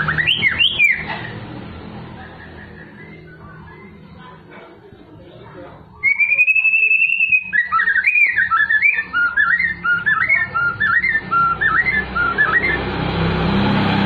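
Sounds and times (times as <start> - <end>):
bird singing whistled phrases: 0.0 - 1.1, 2.3 - 4.0, 6.0 - 12.8.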